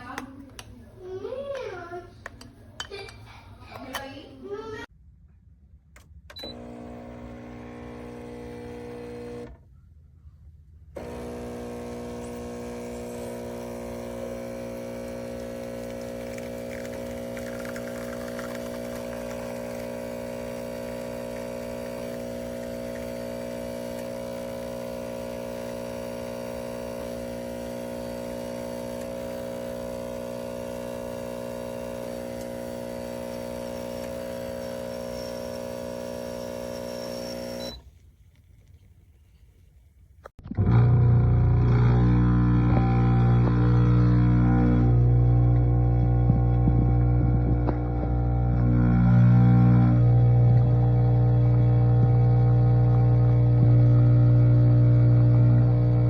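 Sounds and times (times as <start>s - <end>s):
espresso machine pump humming: 6.4s - 9.5s, 11.0s - 37.8s, 41.5s - 56.0s.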